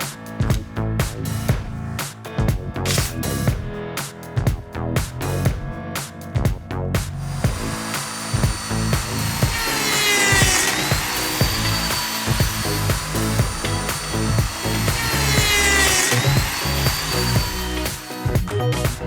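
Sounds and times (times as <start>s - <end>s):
background music with beat: 0.0s - 9.7s, 10.4s - 19.0s
power tool cutting wood: 7.2s - 19.0s.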